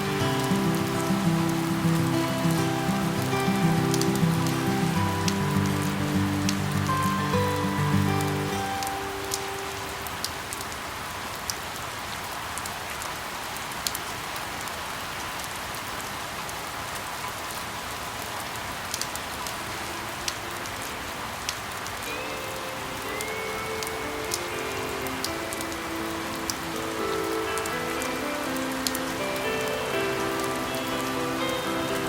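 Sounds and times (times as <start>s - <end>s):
music: 0.0s - 9.9s, 19.7s - 32.0s
sharp raindrops: 0.0s - 32.0s
steady rain falling: 0.0s - 32.0s.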